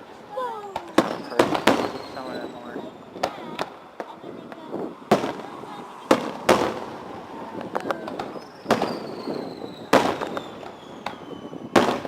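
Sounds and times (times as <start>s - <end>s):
fireworks bangs: 0.0s - 12.0s
small firework cracks: 0.6s - 12.0s
descending whistle: 1.1s - 2.7s, 8.3s - 11.7s.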